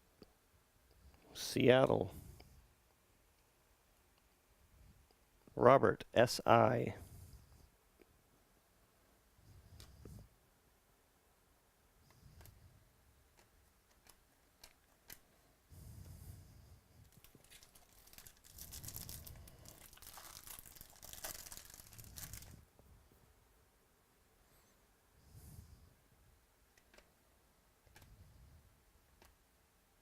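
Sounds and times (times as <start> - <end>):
foil wrapper tearing and crinkling: 17.1 - 22.6.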